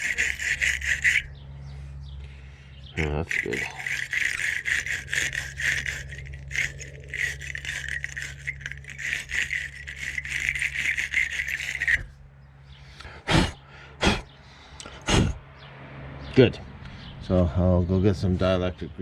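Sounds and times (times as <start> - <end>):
wire brush scraping metal: 0.0 - 1.3, 3.0 - 12.1.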